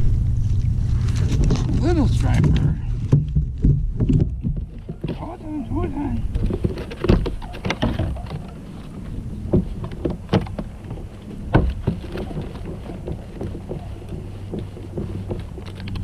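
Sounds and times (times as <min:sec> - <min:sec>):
low steady hum: 0:00.0 - 0:16.0
gear knocking and clattering: 0:01.0 - 0:16.0.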